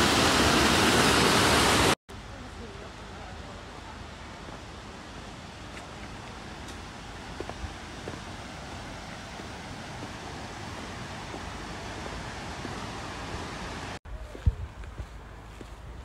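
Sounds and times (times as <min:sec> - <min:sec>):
waterfall rushing: 0:00.0 - 0:02.0, 0:07.1 - 0:14.0.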